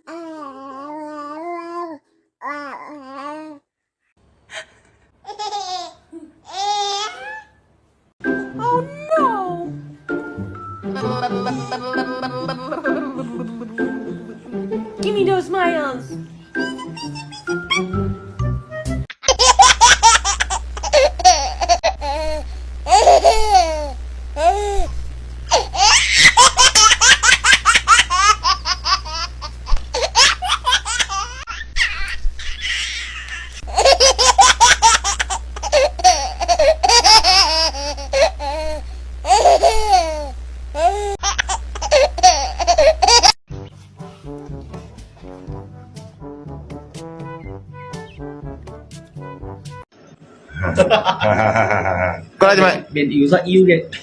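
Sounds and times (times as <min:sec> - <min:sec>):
baby laughing: 0:05.2 - 0:07.6, 0:10.9 - 0:13.6, 0:16.6 - 0:18.0, 0:19.2 - 0:24.8, 0:25.5 - 0:43.4.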